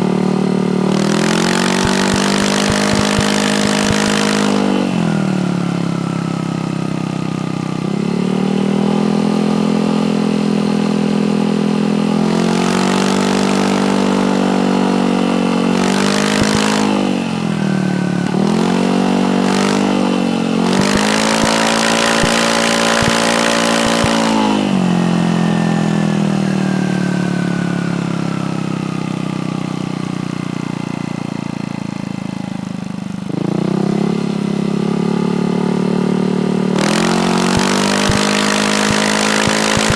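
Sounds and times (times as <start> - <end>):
motorcycle engine idling: 0.0 - 9.0, 19.4 - 33.3
motorcycle engine revving: 0.0 - 39.9.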